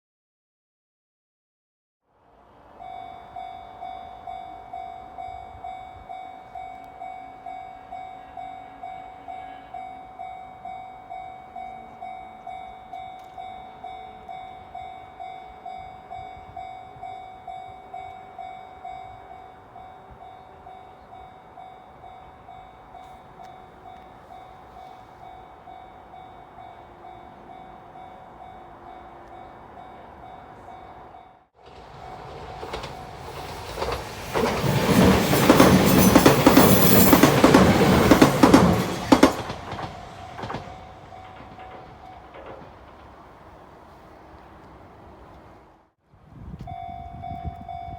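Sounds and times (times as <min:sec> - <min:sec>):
level crossing bell ringing: 0:02.8 - 0:31.4.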